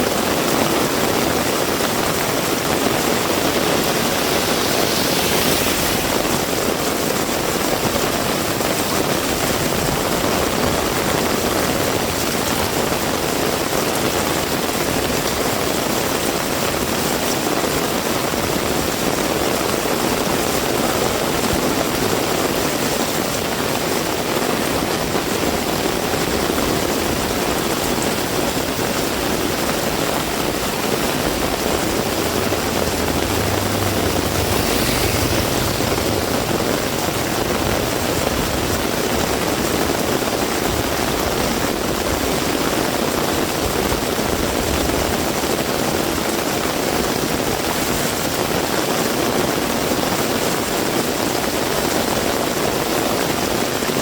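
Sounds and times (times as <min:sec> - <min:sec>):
heavy rain: 0:00.0 - 0:54.0
low rumble: 0:01.7 - 0:12.3, 0:30.3 - 0:41.2.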